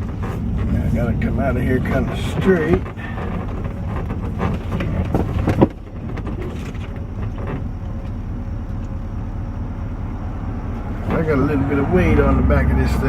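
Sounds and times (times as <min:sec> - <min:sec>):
rattling knocks: 0:00.0 - 0:10.1
vehicle engine rumbling: 0:00.0 - 0:13.0.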